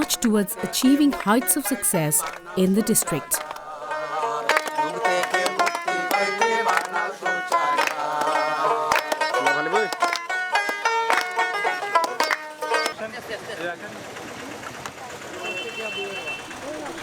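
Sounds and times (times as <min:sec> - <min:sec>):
fast plucked string melody: 0:00.0 - 0:13.0.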